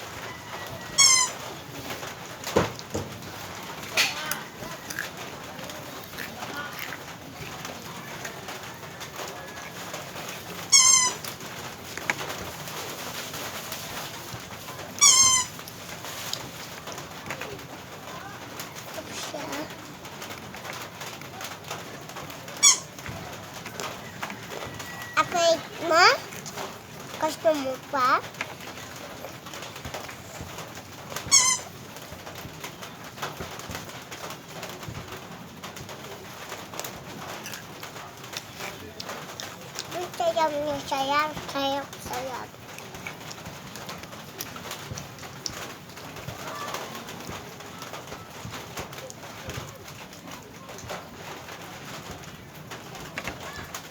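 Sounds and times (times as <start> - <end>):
animal high-pitched calls: 0.2 - 1.5, 10.7 - 11.3, 15.0 - 15.7, 22.6 - 22.9.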